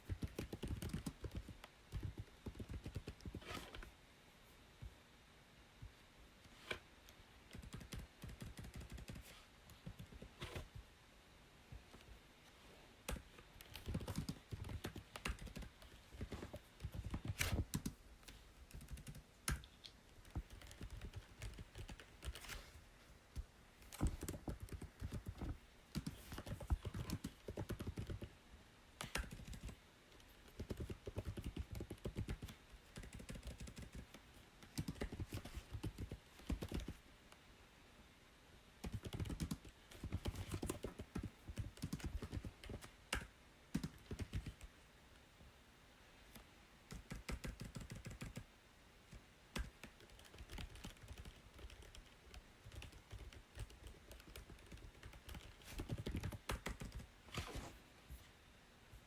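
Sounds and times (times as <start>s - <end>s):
typing on computer keyboard: 0.0s - 3.4s, 7.5s - 10.3s, 13.1s - 18.0s, 18.7s - 22.5s, 23.9s - 28.3s, 29.0s - 29.8s, 30.4s - 37.0s, 38.8s - 44.7s, 46.9s - 48.4s, 49.5s - 57.1s.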